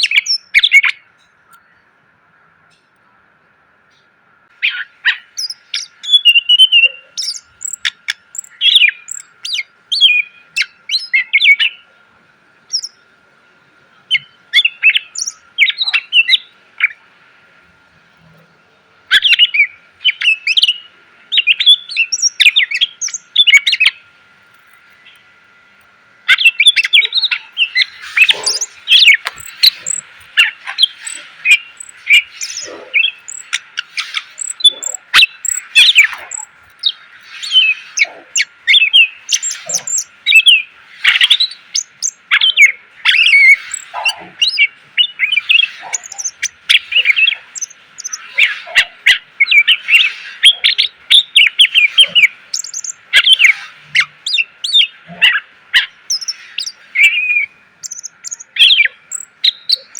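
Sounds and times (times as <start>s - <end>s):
bird singing rapid chirps: 0.0s - 1.9s, 4.5s - 12.0s, 12.6s - 13.2s, 13.9s - 17.1s, 19.1s - 24.1s, 26.2s - 59.9s.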